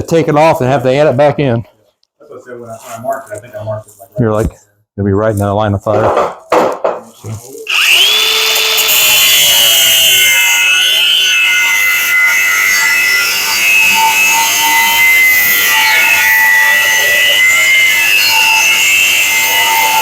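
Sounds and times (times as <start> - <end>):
angle grinder grinding steel: 7.7 - 20.0.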